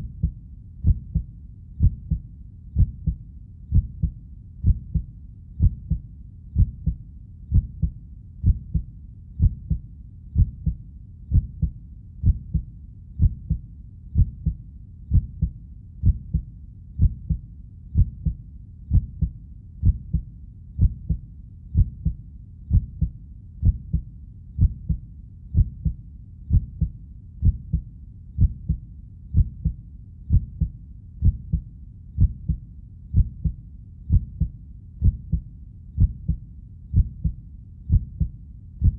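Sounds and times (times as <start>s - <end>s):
heartbeat thumping: 0.0s - 9.8s, 10.4s - 13.6s, 14.2s - 38.9s.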